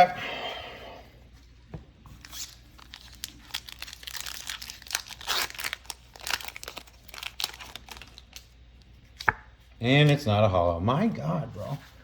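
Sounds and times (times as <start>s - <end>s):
foil wrapper crinkling: 2.2s - 8.9s.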